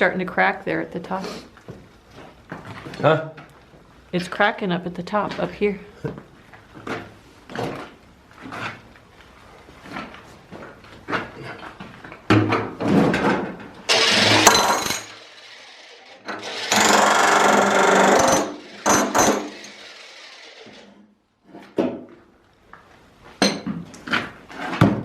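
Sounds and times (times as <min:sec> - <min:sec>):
metal knocks and clatter: 0:12.3 - 0:15.6, 0:16.2 - 0:19.9
power tool running: 0:13.9 - 0:21.0.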